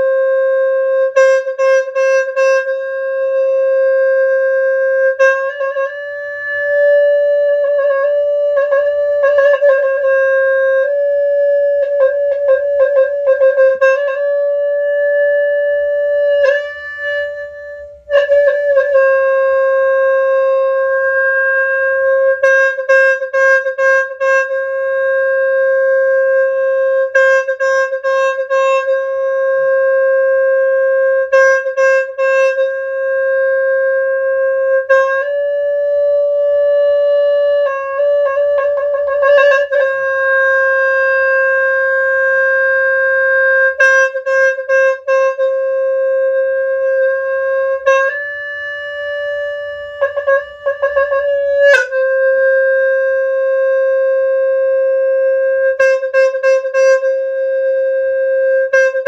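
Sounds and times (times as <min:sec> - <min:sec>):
reedy horn with trills: 0:00.0 - 0:59.0.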